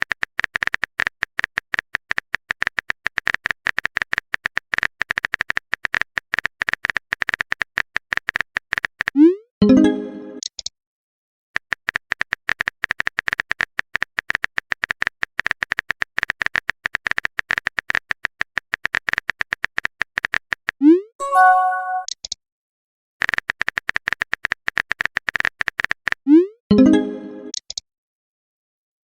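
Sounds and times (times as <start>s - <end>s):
message notification chime: 9.6s - 10.4s, 21.2s - 22.1s, 26.7s - 27.5s.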